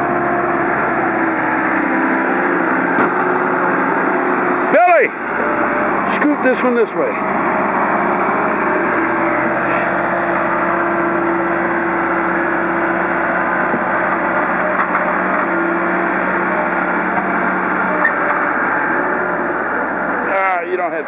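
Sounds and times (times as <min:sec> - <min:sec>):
machine engine humming: 0:00.0 - 0:21.0.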